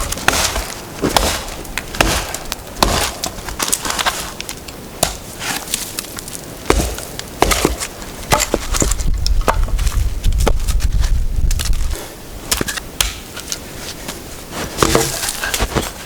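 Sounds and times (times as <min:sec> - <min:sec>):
wood cracking and snapping: 0:00.0 - 0:11.9.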